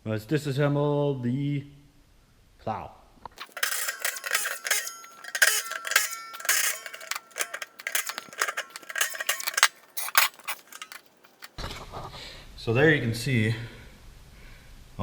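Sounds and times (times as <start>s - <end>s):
metal tools clanking: 3.4s - 11.6s.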